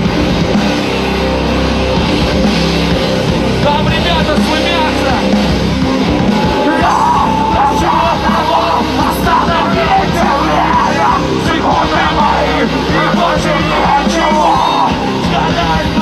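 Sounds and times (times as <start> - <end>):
rock band playing live: 0.0 - 16.0
singer yelling: 5.9 - 16.0.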